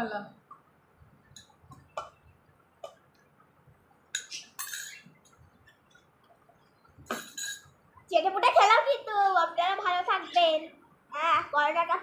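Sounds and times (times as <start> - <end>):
plate scraping and clinking: 4.2 - 5.0, 7.1 - 7.7.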